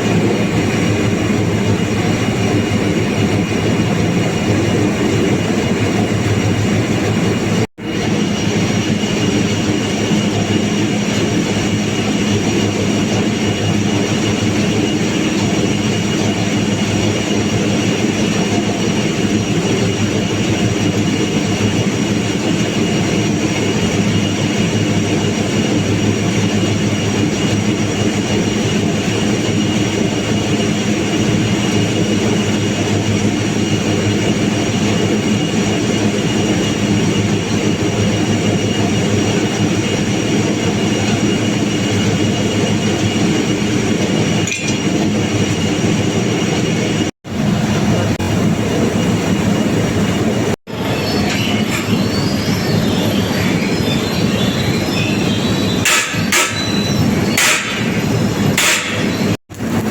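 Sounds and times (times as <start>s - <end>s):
thin high whine: 48.7s - 59.9s.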